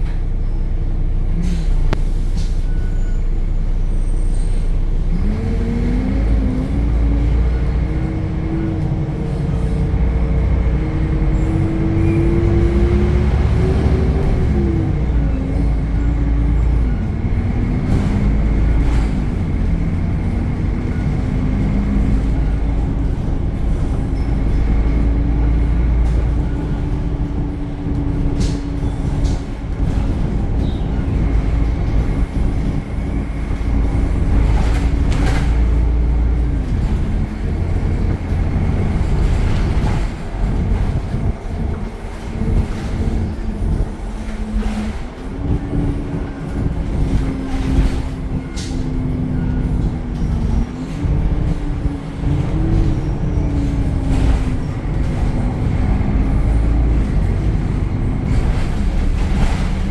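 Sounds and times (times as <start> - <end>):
bus engine rumble: 0.0 - 59.9.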